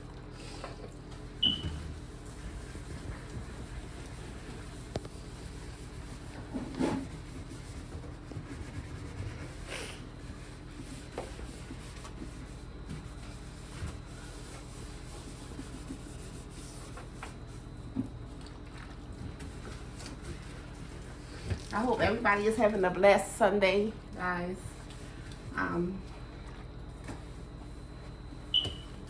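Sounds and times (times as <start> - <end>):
steady low hum: 0.0 - 29.0
rubbing and wiping: 1.4 - 17.8, 18.9 - 22.6.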